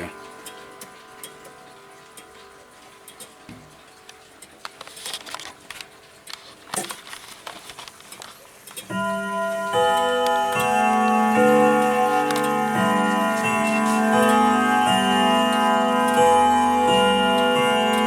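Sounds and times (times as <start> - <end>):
clock chime ringing: 0.0 - 4.0, 8.9 - 18.0
faint clock clicks: 0.0 - 18.0.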